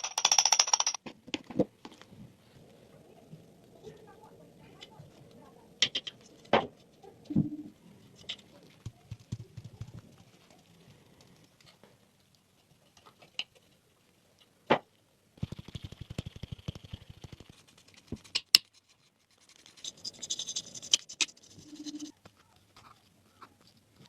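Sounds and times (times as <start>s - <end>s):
rapid rattling: 0.0s - 1.0s, 15.4s - 22.1s
clicks and knocks on toy car: 0.0s - 1.7s
scratchy hiss: 15.4s - 24.0s.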